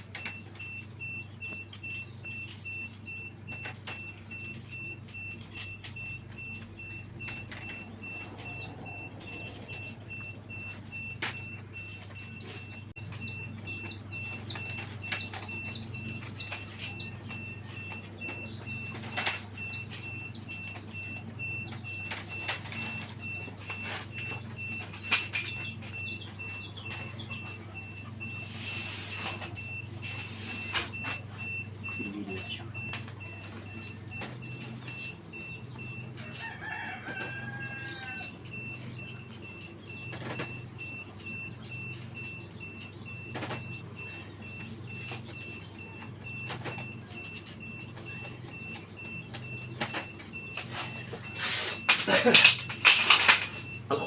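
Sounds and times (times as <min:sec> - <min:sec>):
chickens clucking: 0:00.0 - 0:52.8
rooster crowing: 0:36.2 - 0:38.4.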